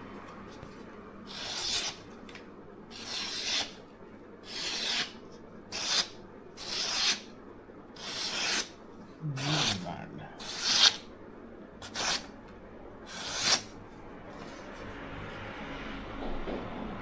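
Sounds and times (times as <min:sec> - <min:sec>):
knife rasping on sharpener: 0:01.3 - 0:02.0, 0:02.9 - 0:03.8, 0:04.5 - 0:07.2, 0:08.0 - 0:08.7, 0:09.4 - 0:11.0, 0:11.8 - 0:12.3, 0:13.1 - 0:13.7.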